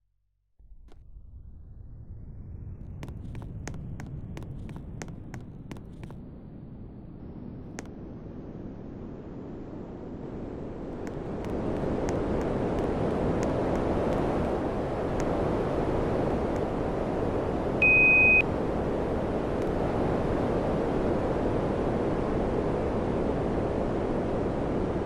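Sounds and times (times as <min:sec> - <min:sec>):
short high beep: 0:17.8 - 0:18.4.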